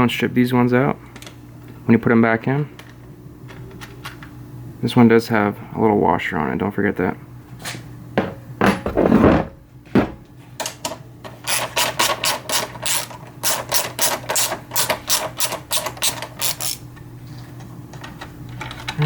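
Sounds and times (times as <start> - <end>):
hand ratchet clicking: 11.4 - 16.8.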